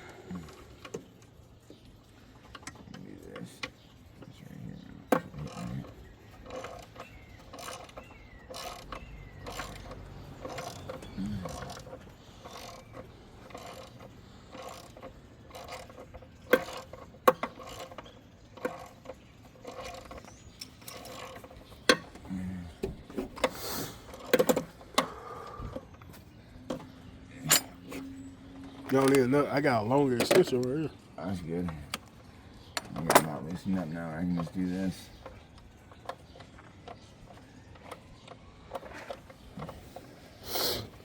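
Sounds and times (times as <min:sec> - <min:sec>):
metal tools clinking on engine: 0:00.0 - 0:40.2
ratchet wrench clicking: 0:06.4 - 0:22.0.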